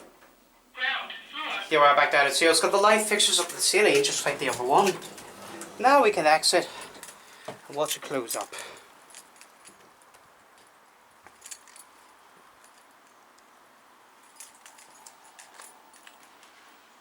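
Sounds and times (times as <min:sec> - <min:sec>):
elevator doors clicking and rattling: 0:02.5 - 0:08.4.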